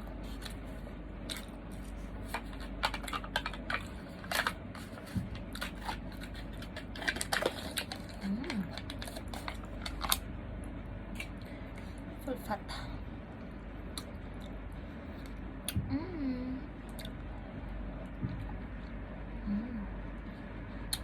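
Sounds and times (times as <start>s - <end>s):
food packaging crinkling: 1.3s - 10.3s.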